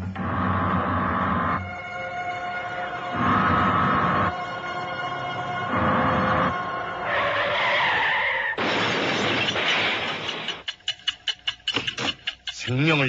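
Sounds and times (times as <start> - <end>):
car tyres screeching: 5.7 - 8.6.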